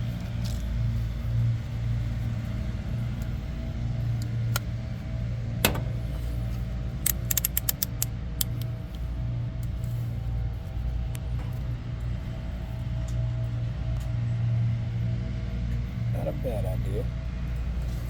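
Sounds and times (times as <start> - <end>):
low mechanical hum: 0.0 - 18.0
sharp metallic click: 7.0 - 8.7
small metallic clicks and clinks: 7.0 - 8.7.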